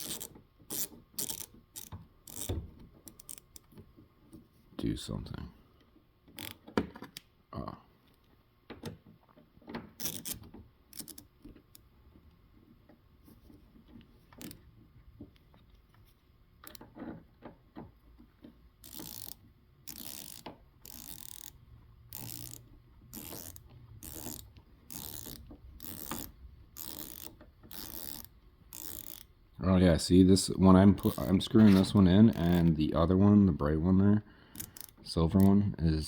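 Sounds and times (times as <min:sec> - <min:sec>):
screwdriver ratcheting: 0:00.0 - 0:03.8, 0:06.3 - 0:07.2, 0:10.0 - 0:11.8, 0:18.8 - 0:29.3, 0:34.5 - 0:35.5
small parts clicking: 0:00.0 - 0:03.8, 0:06.3 - 0:07.3, 0:10.0 - 0:11.9, 0:18.8 - 0:29.3, 0:34.5 - 0:35.6.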